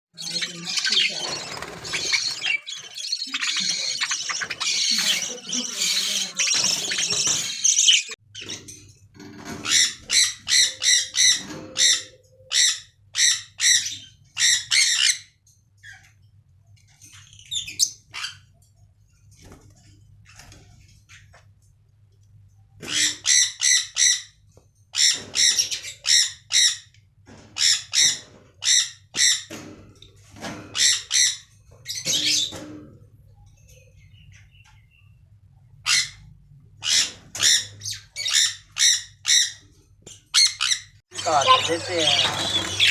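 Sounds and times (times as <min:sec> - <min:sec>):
budgerigars squawking: 0:00.2 - 0:08.2, 0:41.2 - 0:42.9.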